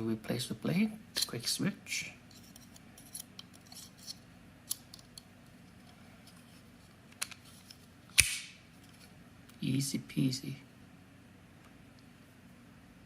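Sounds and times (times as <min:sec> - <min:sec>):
knife snapping shut: 0:08.2 - 0:08.6.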